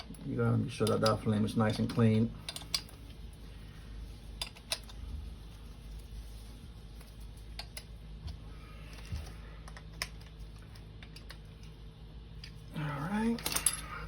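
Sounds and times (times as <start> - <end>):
low steady hum: 0.0 - 14.0
metal tools clinking: 0.8 - 3.0, 13.0 - 14.0.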